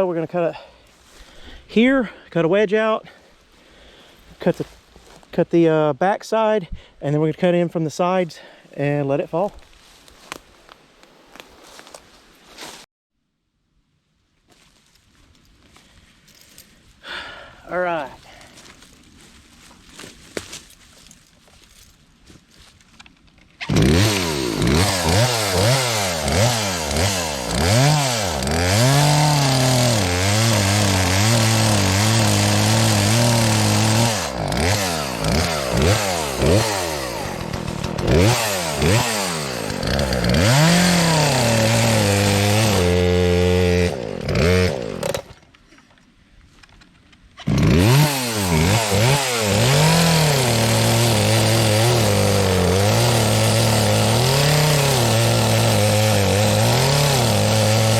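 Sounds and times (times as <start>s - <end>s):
chainsaw cutting tree trunk: 23.6s - 45.4s, 47.4s - 57.9s.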